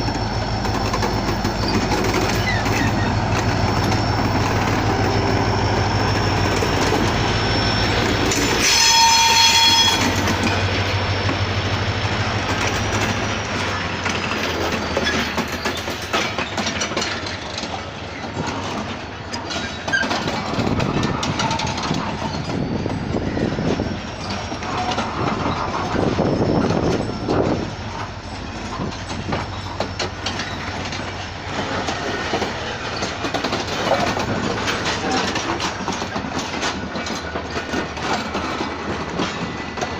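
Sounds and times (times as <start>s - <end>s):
locomotive engine hum: 0.0s - 39.9s
train cars clattering over rail joints: 0.0s - 39.9s
train horn: 8.3s - 10.6s.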